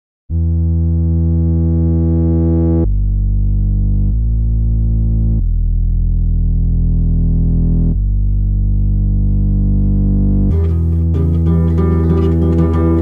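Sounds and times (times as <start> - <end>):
synthesizer holding low notes: 0.3 - 13.0.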